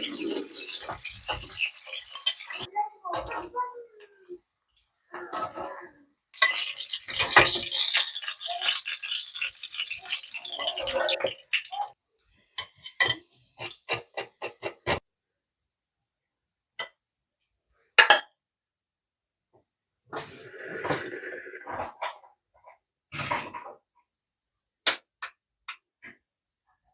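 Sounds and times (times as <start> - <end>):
dishes and cutlery clattering: 0.0 - 3.5, 6.4 - 11.8, 12.6 - 15.0.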